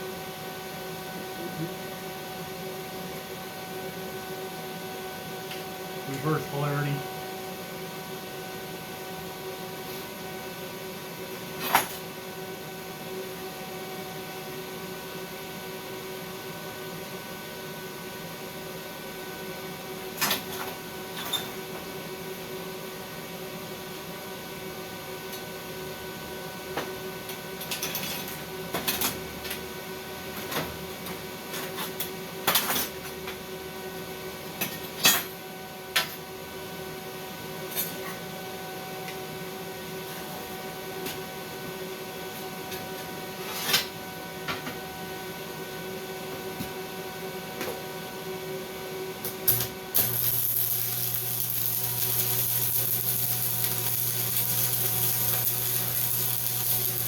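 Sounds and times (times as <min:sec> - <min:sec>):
steady electrical hum: 0:05.7 - 0:08.4, 0:46.9 - 0:57.0.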